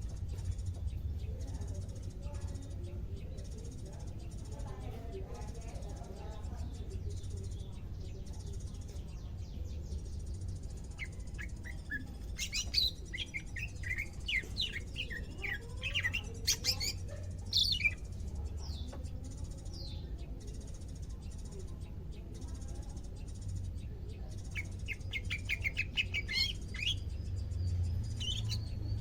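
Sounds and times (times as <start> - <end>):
bird chirping and whistling: 11.0 - 17.0.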